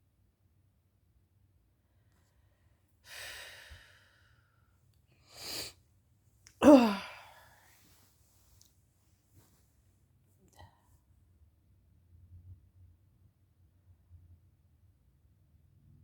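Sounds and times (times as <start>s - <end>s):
woman yawning: 6.6s - 7.4s.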